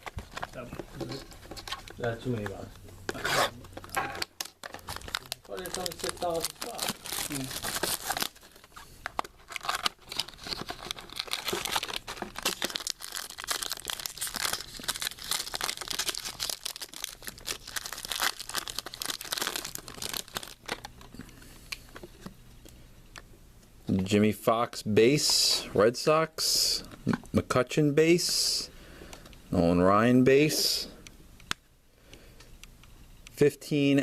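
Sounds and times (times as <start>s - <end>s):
clicks and rustles of handling: 0.0s - 12.8s
plastic wrapping crinkling: 0.0s - 22.3s.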